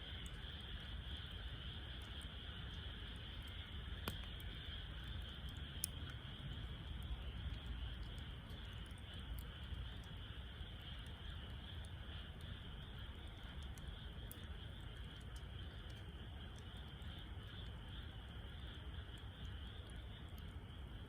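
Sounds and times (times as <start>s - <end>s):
insect chorus: 0.0s - 21.0s
wood fire crackling: 0.0s - 21.0s.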